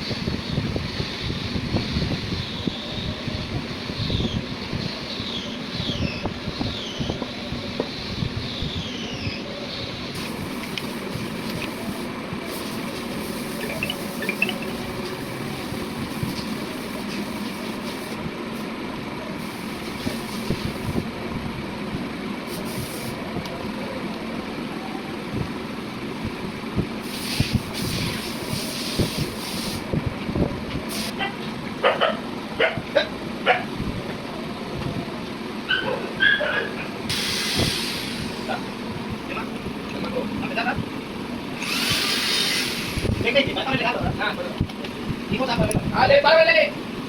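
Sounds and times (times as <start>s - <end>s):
mechanical hum: 0.0s - 47.0s
dog barking: 31.2s - 33.7s, 35.7s - 36.8s.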